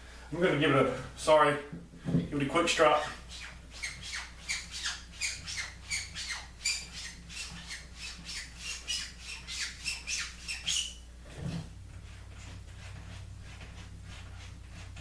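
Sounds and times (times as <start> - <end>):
razor stropping strokes: 3.2 - 11.0, 12.1 - 15.0.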